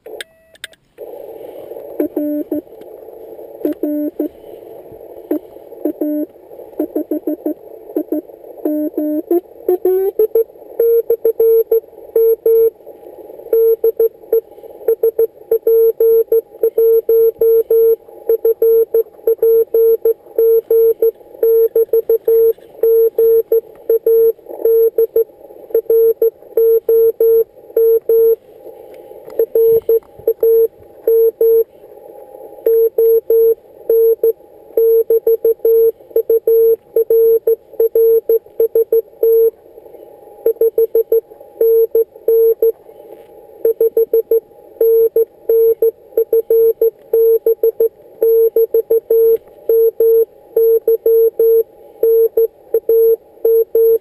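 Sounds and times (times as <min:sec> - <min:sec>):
receiver hiss: 0:00.0 - 0:54.0
morse code tones: 0:02.0 - 0:02.7, 0:03.6 - 0:04.4, 0:13.5 - 0:28.4, 0:29.4 - 0:31.6, 0:43.6 - 0:54.0.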